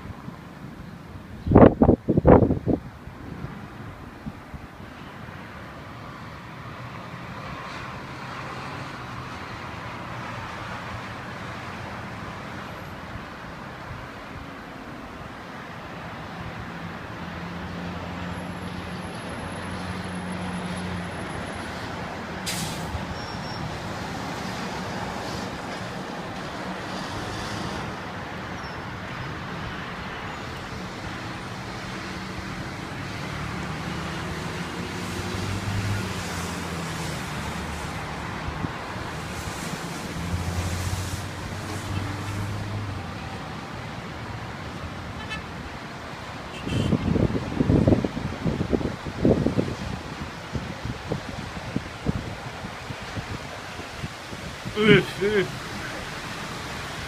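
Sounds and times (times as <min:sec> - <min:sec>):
road traffic humming: 0:00.0 - 0:57.0
rain hissing: 0:39.1 - 0:42.6.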